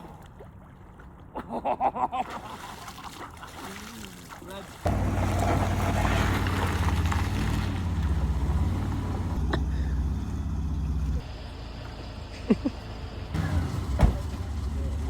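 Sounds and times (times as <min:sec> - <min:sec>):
car engine rumbling: 0:04.8 - 0:15.0.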